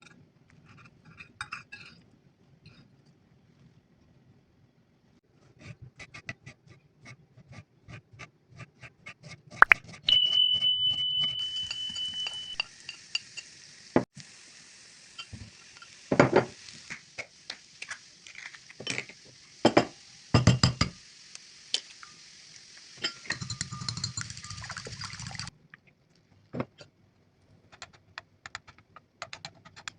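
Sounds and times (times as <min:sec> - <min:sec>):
high ringing tone: 0:10.1 - 0:13.2
food frying in hot oil: 0:11.4 - 0:25.6.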